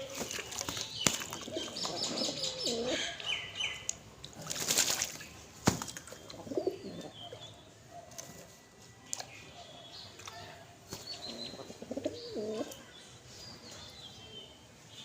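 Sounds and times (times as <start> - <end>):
small birds chirping: 0.0 - 4.0, 5.0 - 15.0
doves cooing: 0.0 - 4.9, 6.0 - 8.4, 10.9 - 12.8.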